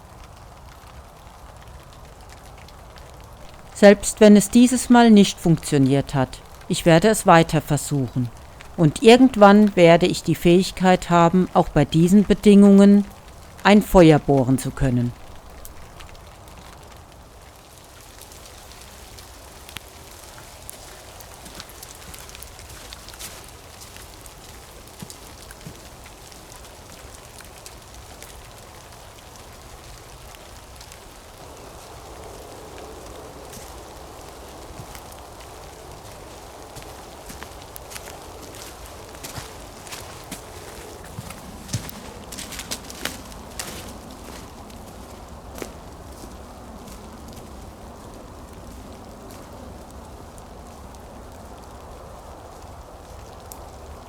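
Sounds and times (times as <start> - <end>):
rain falling: 0.0 - 54.0
raindrops ticking: 3.5 - 16.2.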